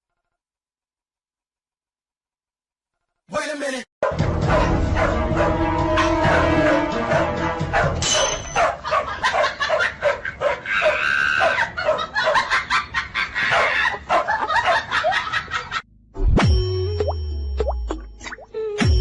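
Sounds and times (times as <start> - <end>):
dog barking rapidly: 4.0 - 5.6, 6.2 - 12.7, 13.4 - 15.2
music: 4.0 - 8.3, 16.2 - 19.0
cartoon plop sound effect: 16.2 - 19.0.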